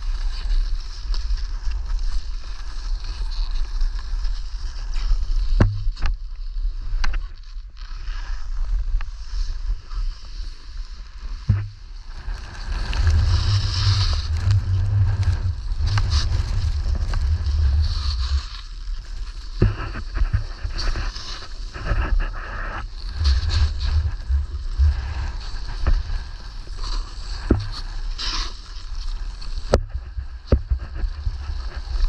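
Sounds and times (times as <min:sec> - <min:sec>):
skis sliding on snow: 0:00.0 - 0:32.0
wind rumbling on microphone: 0:00.0 - 0:32.0.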